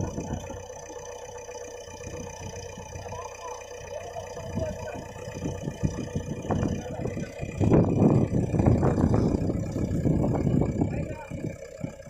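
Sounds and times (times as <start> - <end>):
diesel engine running: 0.0 - 12.0
faint voices: 2.9 - 9.0, 9.6 - 12.0.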